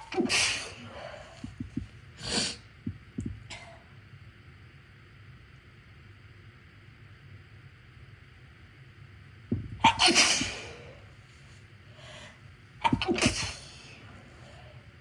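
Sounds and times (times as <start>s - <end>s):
person sneezing: 0.0s - 1.1s, 9.8s - 10.9s, 12.8s - 14.0s.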